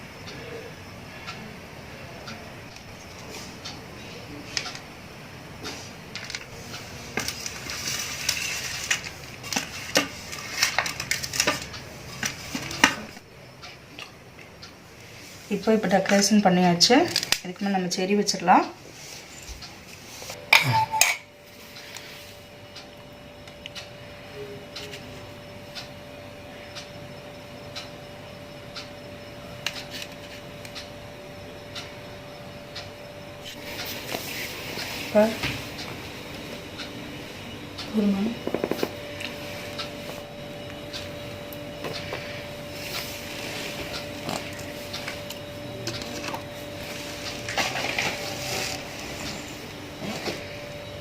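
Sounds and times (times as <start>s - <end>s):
faint steady hum: 0.0s - 51.0s
clock ticking: 28.7s - 29.0s.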